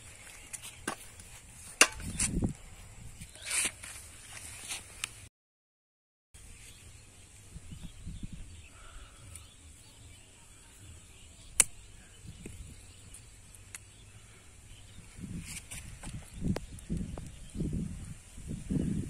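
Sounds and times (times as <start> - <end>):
sharp click: 11.6 - 11.8.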